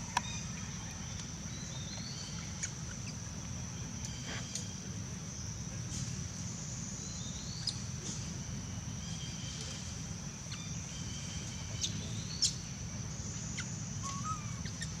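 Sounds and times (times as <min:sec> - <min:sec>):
bird chirps and whistles: 0:14.0 - 0:14.9.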